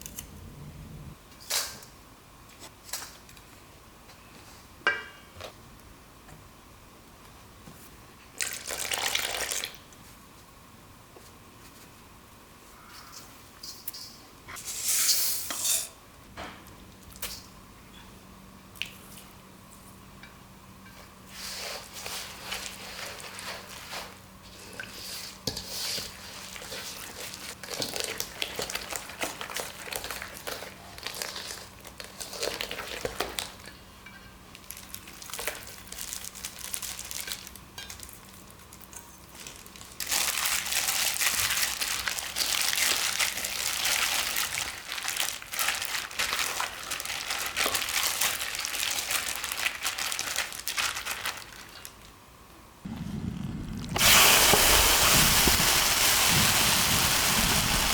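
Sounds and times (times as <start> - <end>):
crinkling and rustling with clicks: 25.6 - 33.8, 34.5 - 52.2
crackling hiss: 52.9 - 57.9.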